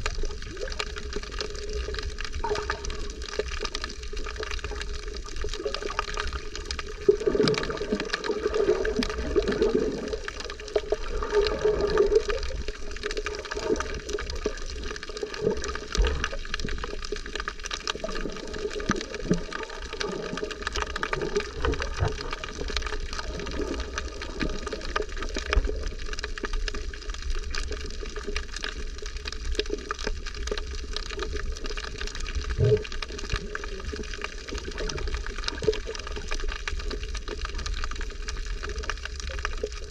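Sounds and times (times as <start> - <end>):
water sloshing and bubbling: 0.0 - 39.9
low rumble: 32.4 - 33.2.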